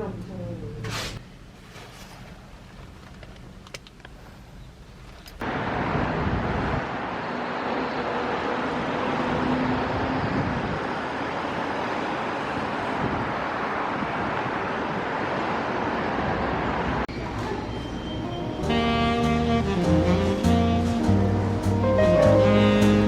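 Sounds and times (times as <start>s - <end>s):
passing traffic: 5.4s - 23.0s.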